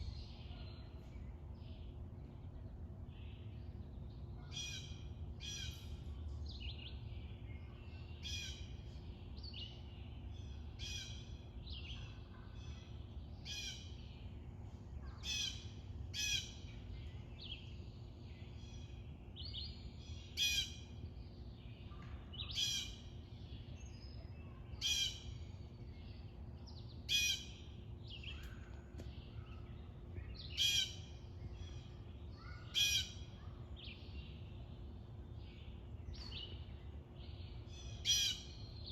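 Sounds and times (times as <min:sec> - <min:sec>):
birds calling in a chorus: 0:15.1 - 0:34.8, 0:35.4 - 0:38.9.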